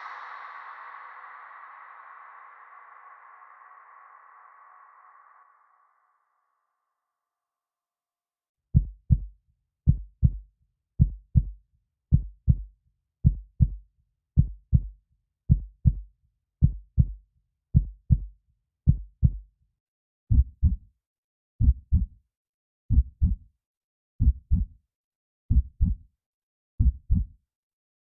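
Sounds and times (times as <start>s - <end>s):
slow heartbeat thumps: 8.8s - 9.3s, 11.0s - 13.8s, 14.4s - 14.9s, 15.5s - 16.0s, 16.6s - 17.2s, 17.8s - 18.3s, 18.9s - 19.4s, 20.3s - 20.8s, 21.6s - 22.1s, 22.9s - 23.4s, 24.2s - 24.7s, 25.5s - 26.0s, 26.8s - 27.3s.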